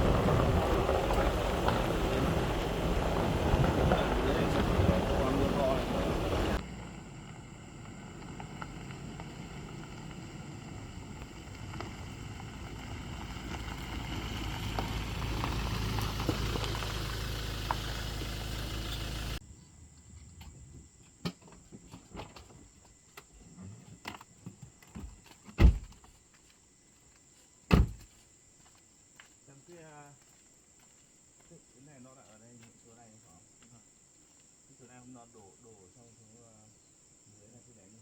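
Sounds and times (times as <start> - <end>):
vehicle engine rumble: 0.0 - 21.1.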